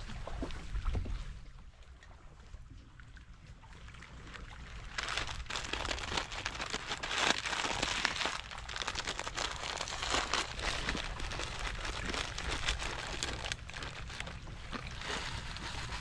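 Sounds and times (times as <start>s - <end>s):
dense crinkling and crackling: 4.2s - 16.0s.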